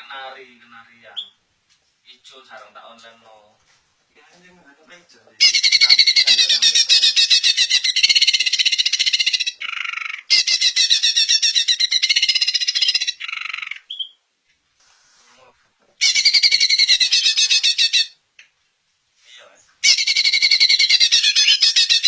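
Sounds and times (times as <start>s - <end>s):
bird chattering song: 5.4s - 14.2s, 16.0s - 18.2s, 19.8s - 22.0s.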